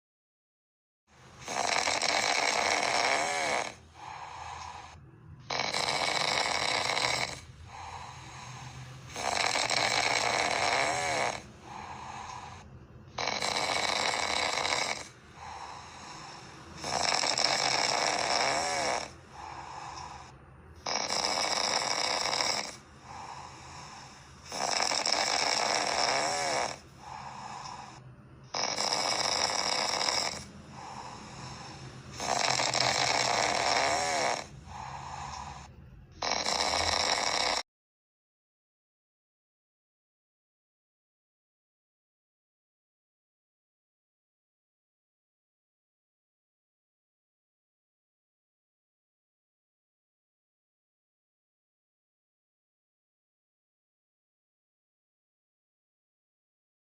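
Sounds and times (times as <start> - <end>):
dog snoring: 1.2 - 37.7.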